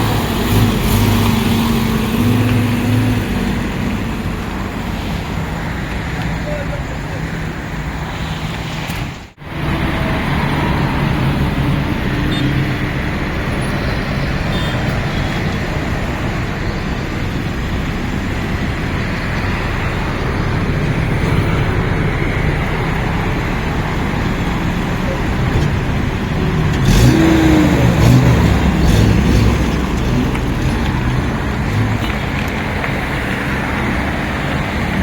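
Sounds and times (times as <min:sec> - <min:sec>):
road traffic noise: 0:00.0 - 0:35.0
vehicle engine running: 0:09.4 - 0:35.0.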